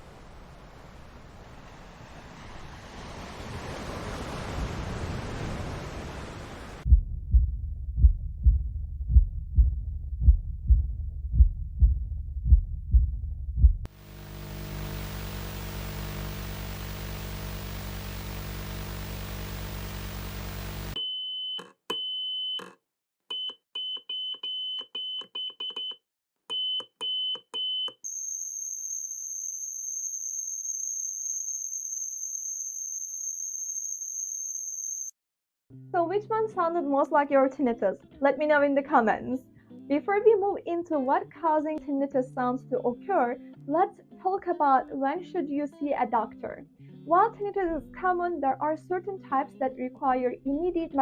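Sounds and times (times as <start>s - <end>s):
heartbeat-like thumping: 6.9s - 13.9s
low buzzing hum: 13.9s - 21.0s
high-pitched ringing tone: 26.5s - 35.1s.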